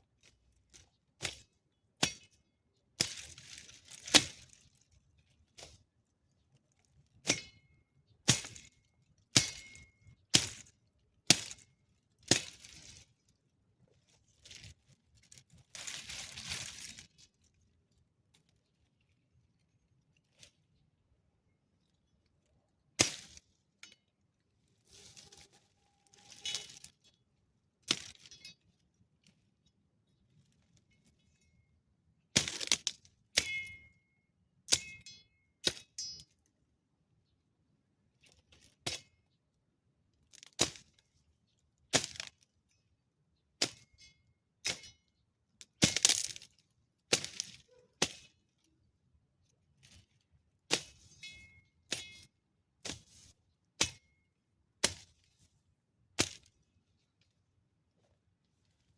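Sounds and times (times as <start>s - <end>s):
garden shears snipping: 3.0s - 4.6s, 8.3s - 10.7s, 12.3s - 13.0s, 14.4s - 17.1s, 27.8s - 28.5s, 32.4s - 33.7s, 41.9s - 42.3s, 45.7s - 48.4s, 56.2s - 56.6s.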